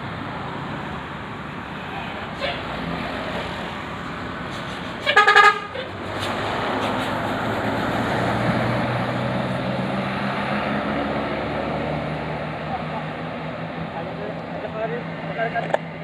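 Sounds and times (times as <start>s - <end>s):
bus engine and road noise: 0.0s - 16.0s
bus multi-tone horn: 2.4s - 2.8s, 5.0s - 6.0s.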